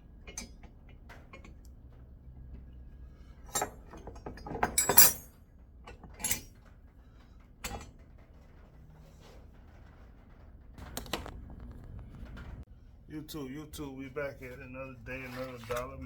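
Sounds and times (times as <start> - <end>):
low steady hum: 10.8 - 16.0.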